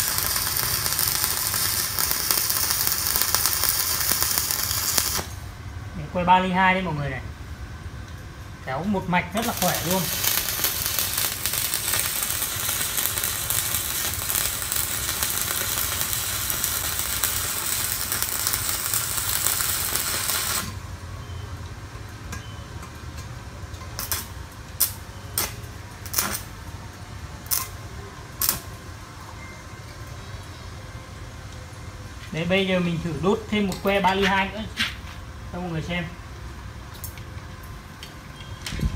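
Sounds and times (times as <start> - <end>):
welding arc crackling hiss: 0.0 - 5.5, 8.8 - 20.8, 23.9 - 26.7, 27.4 - 28.8.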